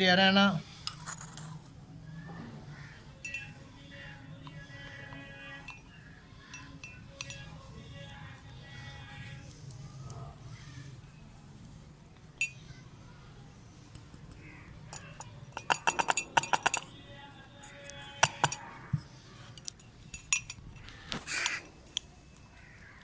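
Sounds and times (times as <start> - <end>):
spoon clinking against glass dish: 3.2 - 3.6, 5.6 - 7.6, 14.9 - 17.0, 18.2 - 18.6, 19.6 - 22.1.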